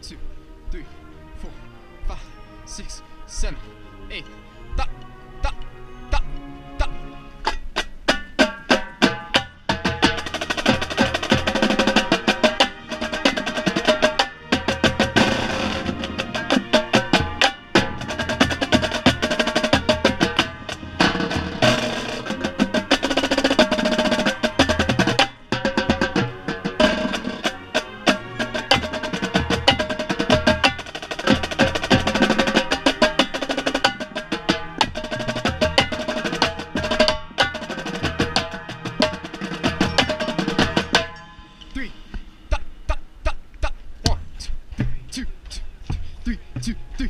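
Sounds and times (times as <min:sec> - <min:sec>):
marching band playing: 0:00.0 - 0:43.4
tenor drums playing fast runs: 0:06.8 - 0:41.2.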